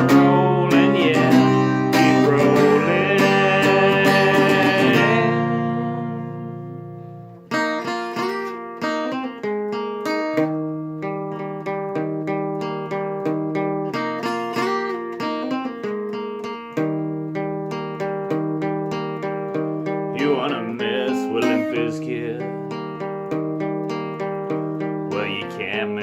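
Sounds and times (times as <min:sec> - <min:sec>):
acoustic guitar chord ringing: 0:00.0 - 0:26.0
picked acoustic guitar riff: 0:00.0 - 0:26.0.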